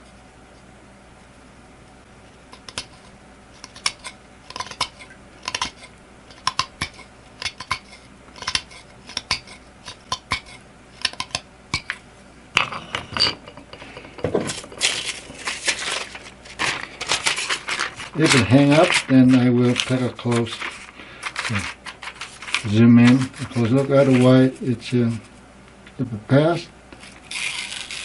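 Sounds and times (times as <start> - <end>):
knife scraping antler: 2.6 - 12.0.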